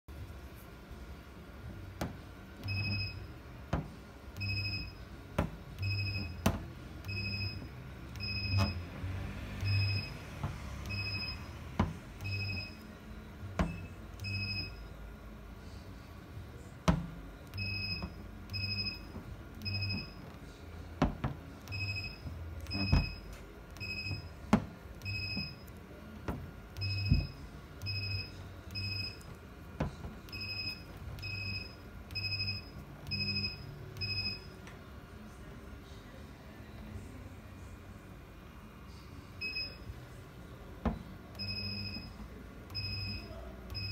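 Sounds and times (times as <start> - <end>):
short electronic beeps: 10.9 - 11.6, 21.7 - 24.3, 30.3 - 34.5, 41.4 - 43.9.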